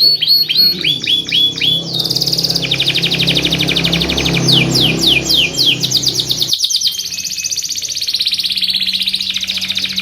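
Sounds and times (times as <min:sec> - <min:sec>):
low steady hum: 0:00.0 - 0:06.6
canary singing: 0:00.0 - 0:10.0.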